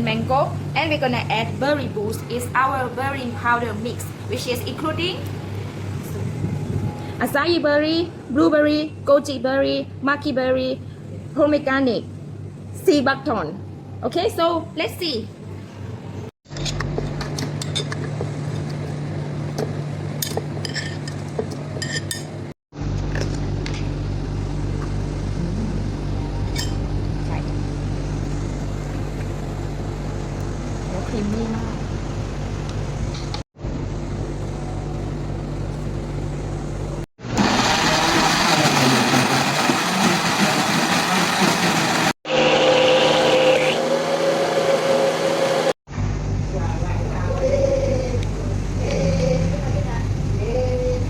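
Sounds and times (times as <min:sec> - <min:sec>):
steady low hum: 0:00.0 - 0:37.1, 0:45.9 - 0:51.0
blender motor running: 0:37.2 - 0:45.8.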